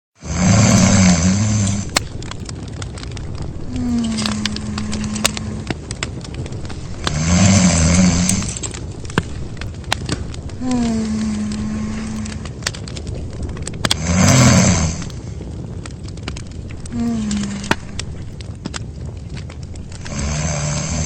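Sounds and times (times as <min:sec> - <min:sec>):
cartoon snoring: 0:00.2 - 0:01.8, 0:14.0 - 0:14.9, 0:20.1 - 0:21.0
faint clicks: 0:00.7 - 0:21.0.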